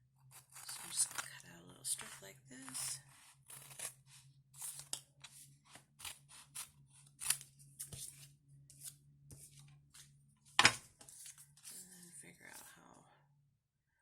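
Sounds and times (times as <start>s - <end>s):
scissors snipping paper: 0.3s - 5.0s, 5.7s - 9.5s.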